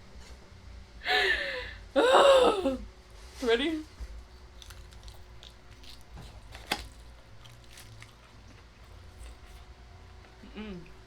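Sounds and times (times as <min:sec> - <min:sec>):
low steady hum: 0:00.0 - 0:11.0
person chewing food: 0:04.2 - 0:11.0.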